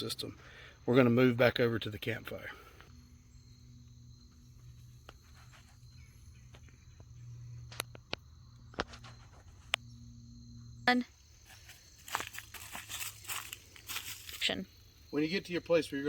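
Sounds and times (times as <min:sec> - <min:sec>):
insect trilling: 0:00.0 - 0:16.0
footsteps on dry leaves: 0:11.4 - 0:14.5.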